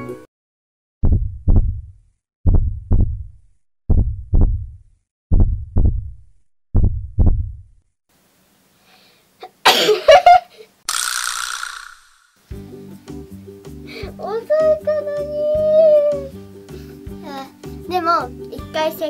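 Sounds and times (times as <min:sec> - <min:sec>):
heartbeat double thumps: 0:01.0 - 0:07.8
person sneezing: 0:09.4 - 0:10.1.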